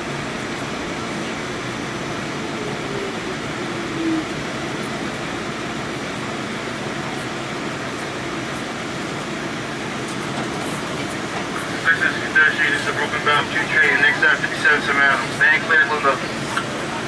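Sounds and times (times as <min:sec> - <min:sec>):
subway car interior noise: 0:00.0 - 0:17.0
brief higher tone: 0:03.8 - 0:04.4.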